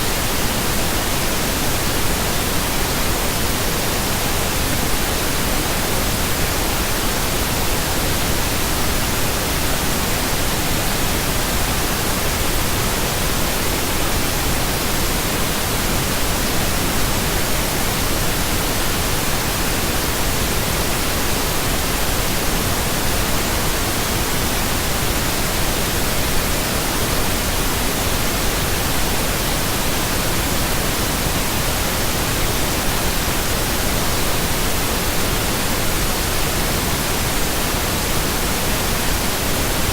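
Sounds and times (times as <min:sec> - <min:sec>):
pink noise hiss: 0:00.0 - 0:39.9.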